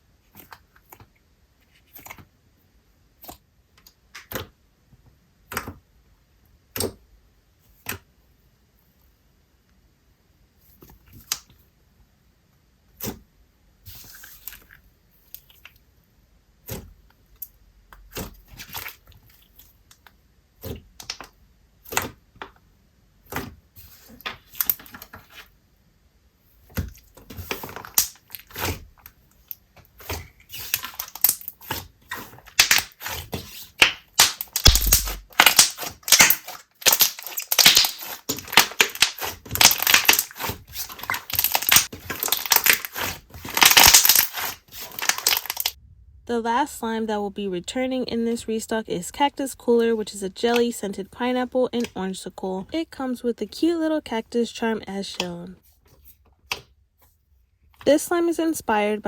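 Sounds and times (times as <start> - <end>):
sticky slime clicks and pops: 33.8 - 40.3.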